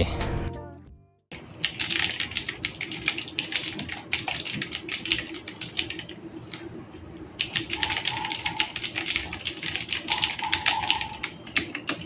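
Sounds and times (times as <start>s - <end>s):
mechanical keyboard typing: 1.4s - 6.2s, 7.4s - 12.0s.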